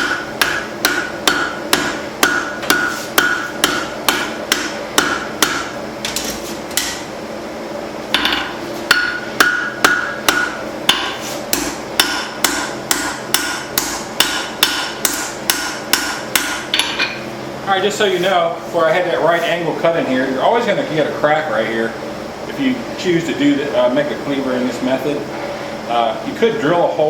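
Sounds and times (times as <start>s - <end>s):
hammer striking steel on anvil: 0.0s - 7.0s, 8.2s - 17.2s.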